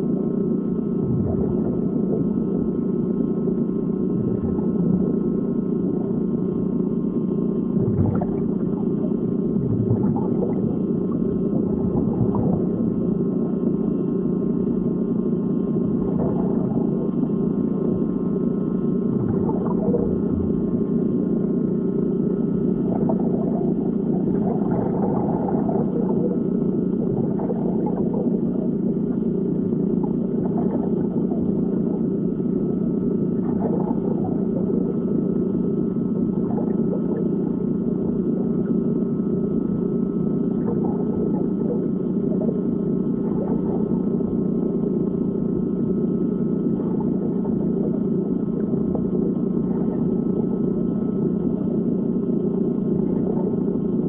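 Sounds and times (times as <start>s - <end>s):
muffled underwater rumble: 0.0s - 54.0s.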